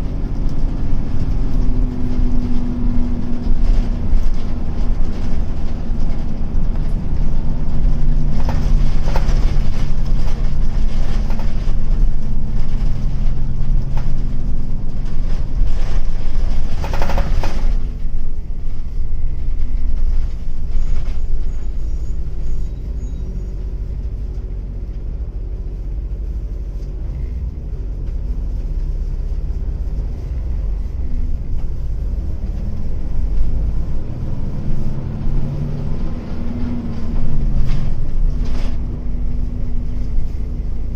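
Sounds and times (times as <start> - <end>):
bus diesel engine running: 0.0 - 40.9.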